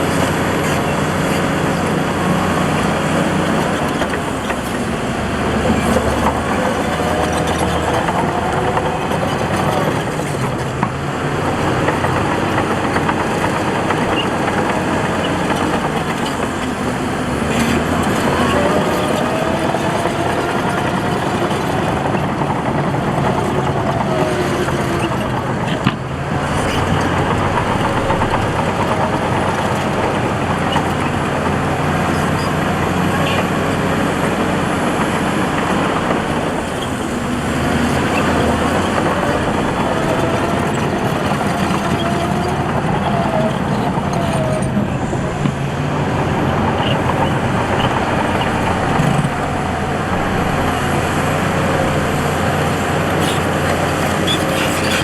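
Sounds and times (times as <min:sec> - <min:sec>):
heavy diesel machinery running: 0:00.0 - 0:55.0.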